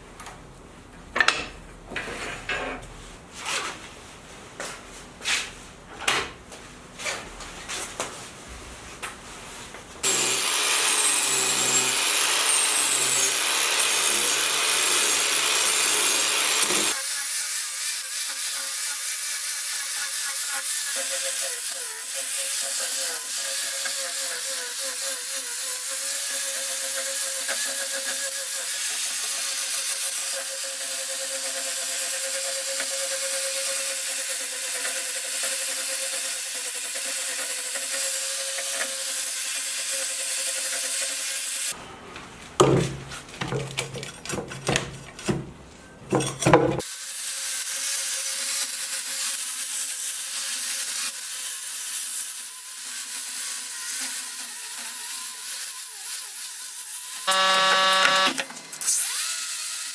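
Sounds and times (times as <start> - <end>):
loud cutting noise: 10.0 - 19.1, 57.1 - 59.9
wooden knocks: 42.6 - 45.5.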